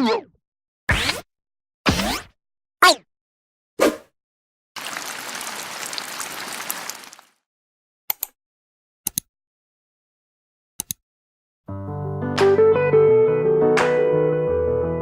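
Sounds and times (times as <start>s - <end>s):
crackling fizzing noise: 4.8s - 7.4s.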